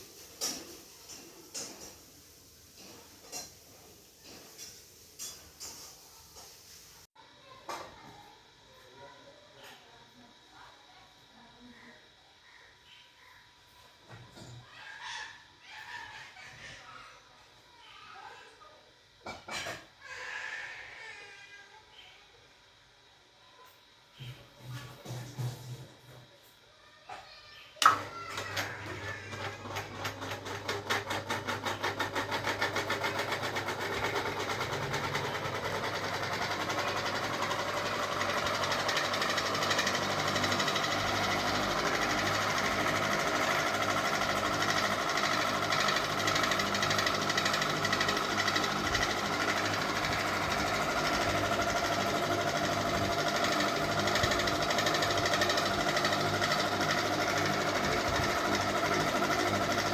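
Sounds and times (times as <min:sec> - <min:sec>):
ceiling fan whirring: 0:20.0 - 0:59.9.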